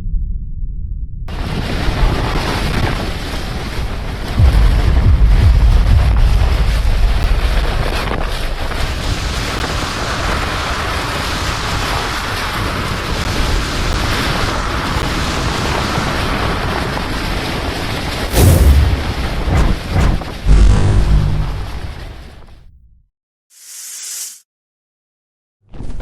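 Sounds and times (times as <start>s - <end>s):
rushing wind-like noise: 1.3s - 22.5s
sudden loud hit: 4.4s - 8.2s, 18.3s - 23.0s.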